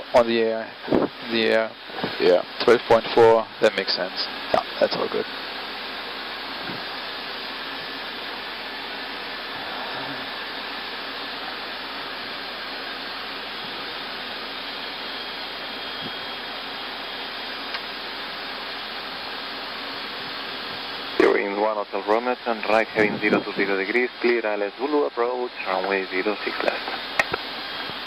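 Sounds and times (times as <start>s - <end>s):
cockpit airflow rushing: 0.6s - 21.3s.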